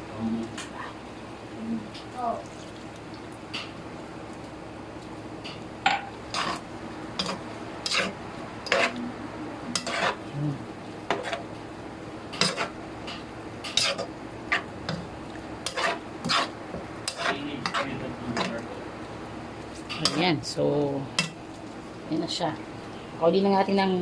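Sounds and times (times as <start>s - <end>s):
faint steady hum: 0.0s - 24.0s
utensil scraping a frying pan: 6.2s - 9.0s, 9.7s - 10.2s, 11.1s - 11.5s, 12.3s - 15.0s, 15.6s - 18.6s.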